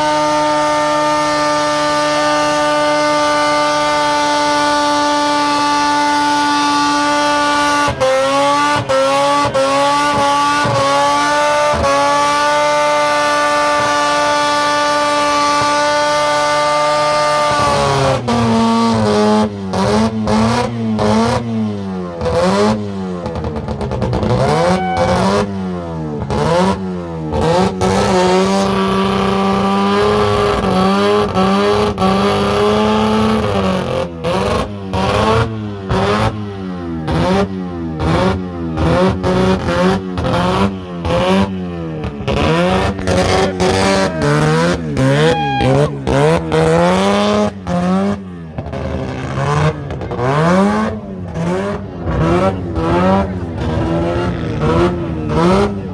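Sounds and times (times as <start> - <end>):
rotary engine revving: 22.2 - 31.0, 37.1 - 55.9.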